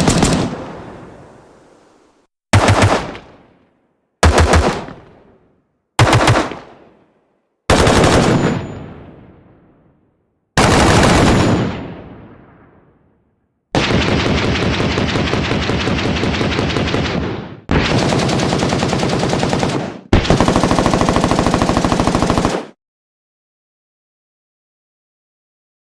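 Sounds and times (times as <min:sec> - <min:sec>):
automatic rifle fire: 0:00.0 - 0:00.6, 0:02.6 - 0:03.4, 0:04.2 - 0:05.3, 0:06.0 - 0:06.8, 0:10.6 - 0:11.9.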